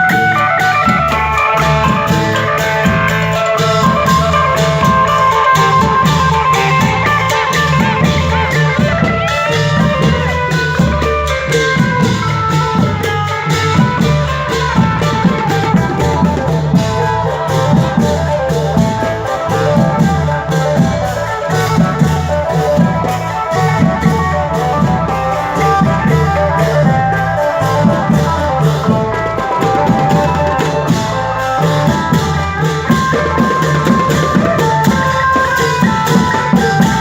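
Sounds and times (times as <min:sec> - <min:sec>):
drum kit steady beat: 0:00.0 - 0:37.0.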